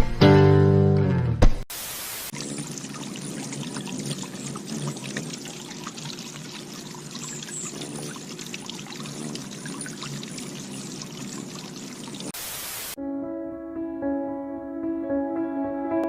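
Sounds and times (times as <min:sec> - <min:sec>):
pouring splashing water: 0:01.7 - 0:13.0.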